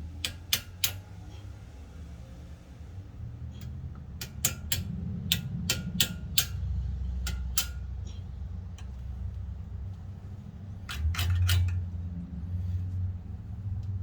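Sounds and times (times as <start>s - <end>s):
hand tools clinking on metal: 10.8s - 12.2s.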